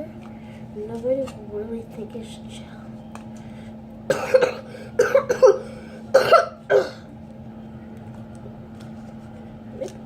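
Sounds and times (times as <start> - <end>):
faint steady hum: 0.0 - 10.0
person coughing: 4.1 - 7.1.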